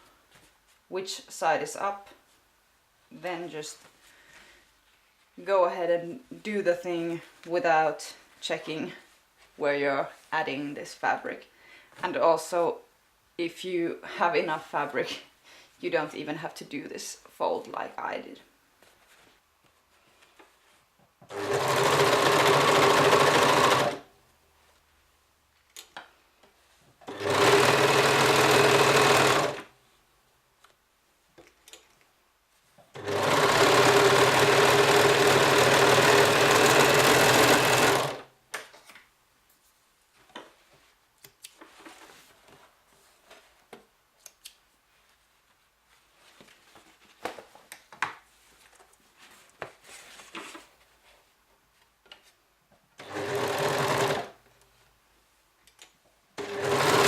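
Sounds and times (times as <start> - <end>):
fabric handling: 18.8 - 21.0, 44.6 - 51.8.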